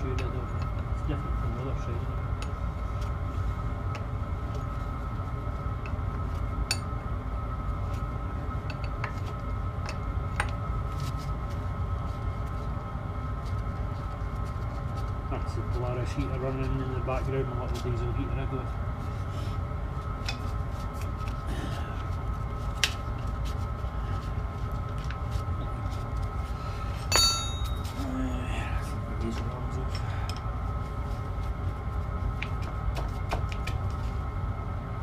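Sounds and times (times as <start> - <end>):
diesel air heater humming: 0.0 - 35.0
sharp metallic clink: 27.1 - 27.8.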